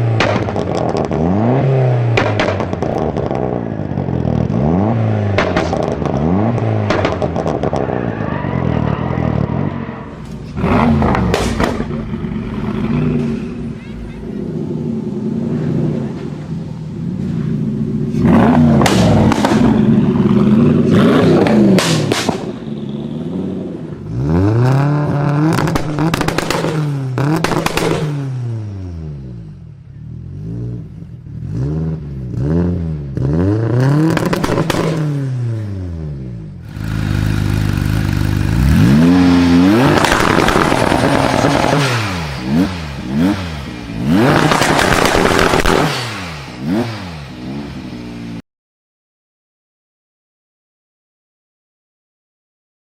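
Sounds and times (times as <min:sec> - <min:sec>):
car engine revving: 0:00.0 - 0:48.4
exhaust pops and crackles: 0:00.1 - 0:04.6, 0:05.3 - 0:08.2, 0:10.2 - 0:13.6, 0:17.5 - 0:22.8, 0:24.9 - 0:28.3, 0:33.7 - 0:35.2, 0:36.7 - 0:46.3.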